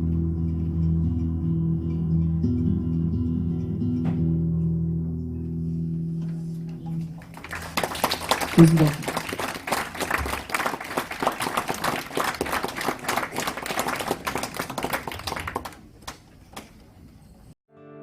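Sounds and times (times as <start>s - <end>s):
audience applauding: 7.1s - 16.7s.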